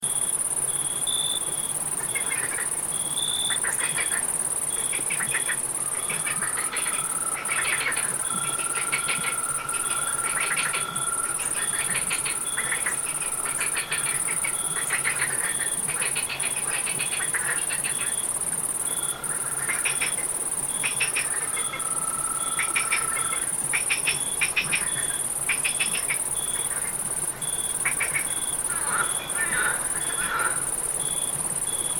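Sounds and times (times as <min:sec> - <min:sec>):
low steady trill: 0:00.0 - 0:25.4
cricket chirping: 0:00.0 - 0:31.9
frogs calling: 0:00.0 - 0:31.9
high insect trill: 0:00.0 - 0:31.9.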